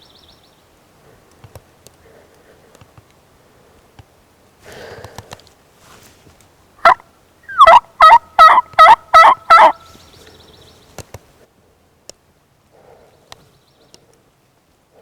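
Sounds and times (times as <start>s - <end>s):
turkey yelping: 6.8s - 9.9s.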